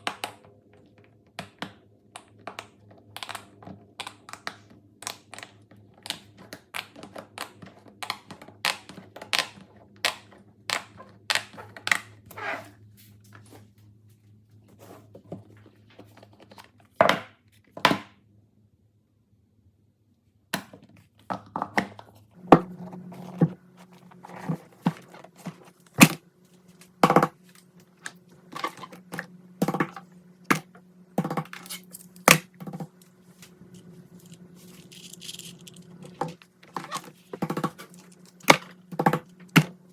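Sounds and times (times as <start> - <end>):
low steady hum: 22.3 - 39.9.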